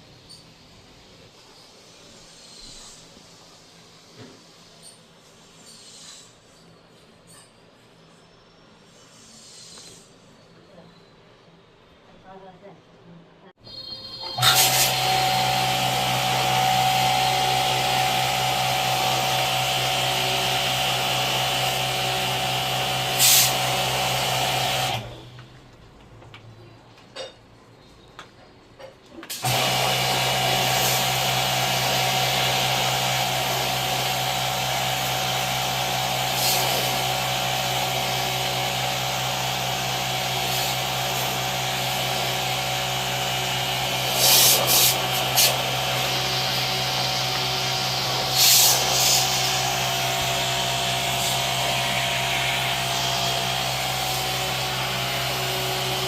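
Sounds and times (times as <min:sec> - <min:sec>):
electric motor humming: 0:14.4 - 0:25.1, 0:29.4 - 0:56.0.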